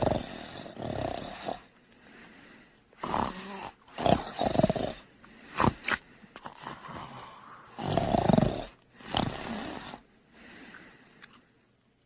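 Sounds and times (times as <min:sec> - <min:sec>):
person snoring: 0:00.0 - 0:01.7, 0:03.0 - 0:10.1.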